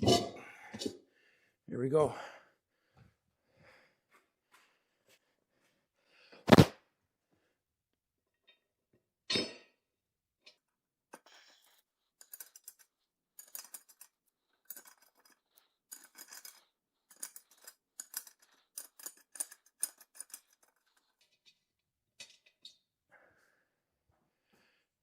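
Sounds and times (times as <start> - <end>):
metallic clicking and scraping: 11.2 - 21.6.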